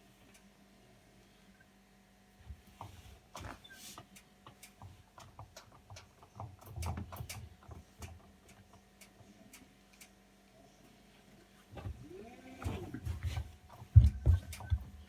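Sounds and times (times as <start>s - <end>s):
faint steady hum: 0.0s - 15.0s
washing machine clicking: 4.0s - 10.1s, 13.8s - 15.0s.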